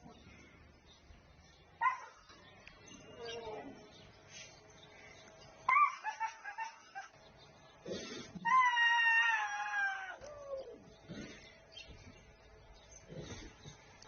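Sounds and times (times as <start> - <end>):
tiger cub crying: 5.7 - 7.1, 8.2 - 10.9.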